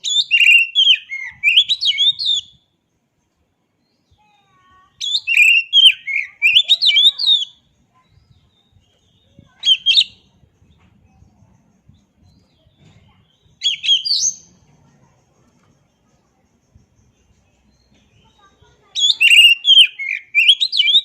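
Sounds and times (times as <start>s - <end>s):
bird singing whistled phrases: 0.0s - 2.6s, 4.9s - 10.3s, 12.2s - 14.6s, 17.8s - 21.0s.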